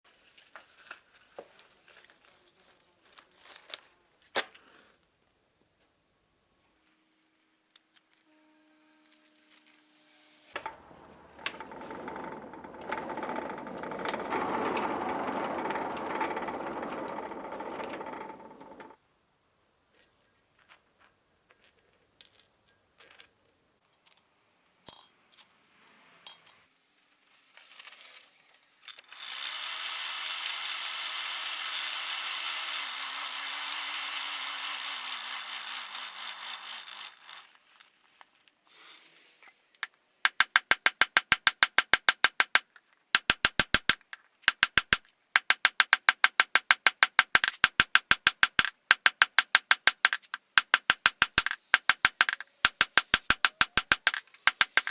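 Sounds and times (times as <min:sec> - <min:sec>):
hammer striking metal: 0:40.3 - 0:54.9
scattered clicks: 0:40.3 - 0:54.9.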